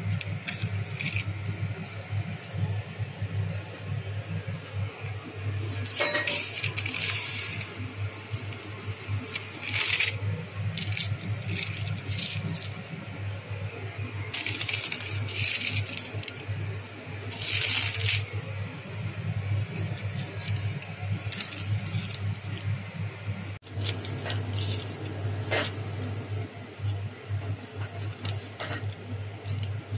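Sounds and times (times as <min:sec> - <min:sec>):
steady low hum: 0:00.0 - 0:29.9
dishes clinking and clattering: 0:05.9 - 0:06.7.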